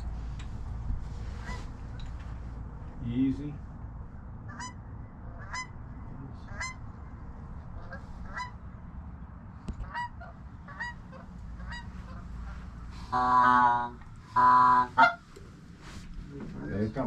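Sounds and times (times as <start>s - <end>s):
faint goose honks: 1.4s - 1.8s, 4.5s - 5.8s, 6.4s - 6.8s, 7.8s - 8.6s, 9.8s - 15.3s.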